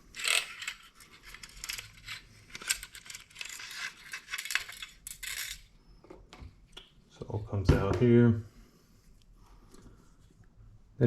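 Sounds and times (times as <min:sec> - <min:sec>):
metal parts clicking and scraping: 0:00.0 - 0:05.7.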